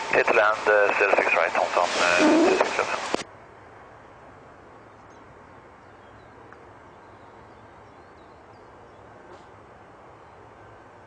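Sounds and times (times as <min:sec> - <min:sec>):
low hum: 0:01.2 - 0:03.2.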